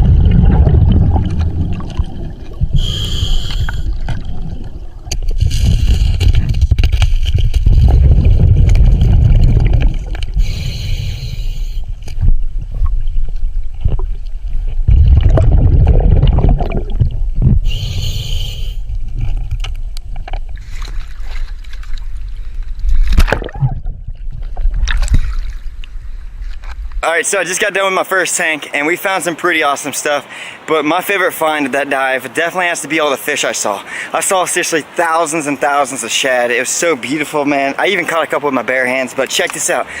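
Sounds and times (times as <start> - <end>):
gurgling exhaled bubbles: 0.0 - 11.2, 13.8 - 17.9, 22.9 - 25.8
hissing inhale through regulator: 2.7 - 4.2, 10.4 - 11.9, 17.6 - 19.0.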